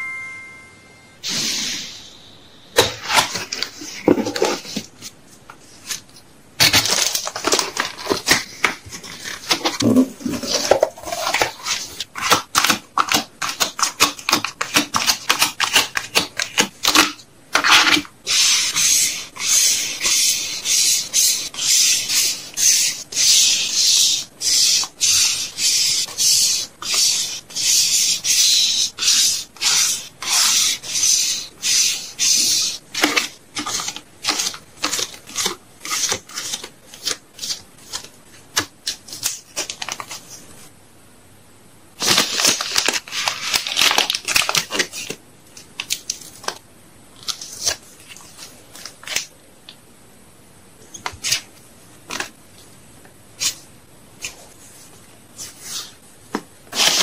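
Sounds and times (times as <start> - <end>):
plastic and paper crinkling: 2.8 - 18.1, 32.7 - 40.6, 42.0 - 46.6, 56.7 - 57.0.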